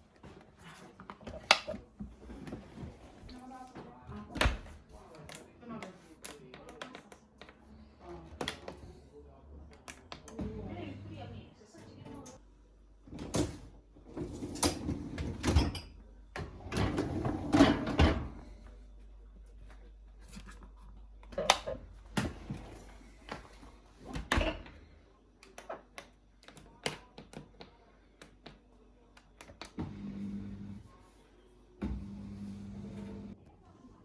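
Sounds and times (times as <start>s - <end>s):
dishwasher racks and dishes clattering: 13.1s - 18.6s.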